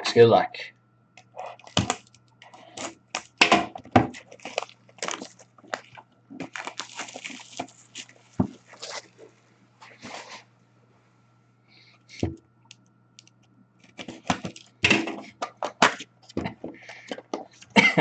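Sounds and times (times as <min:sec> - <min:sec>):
packaging torn and crinkled: 0:04.1 - 0:09.2.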